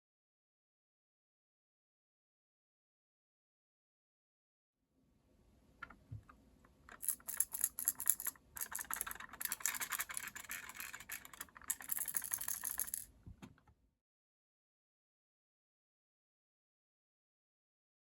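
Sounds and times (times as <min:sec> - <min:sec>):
loose part rattling in housing: 0:06.9 - 0:13.1.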